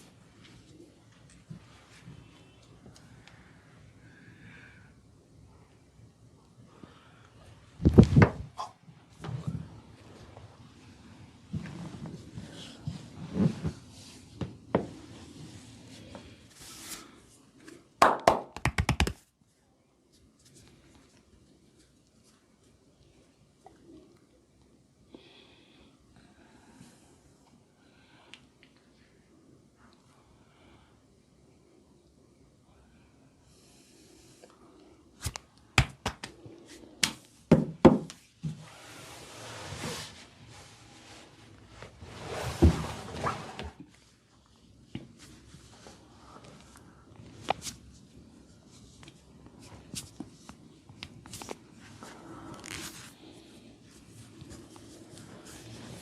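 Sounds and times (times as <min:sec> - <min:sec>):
hands slapping a body: 0:18.0 - 0:19.2, 0:35.2 - 0:36.4, 0:37.0 - 0:38.2
hands rubbing skin: 0:18.6 - 0:19.2, 0:35.2 - 0:37.2.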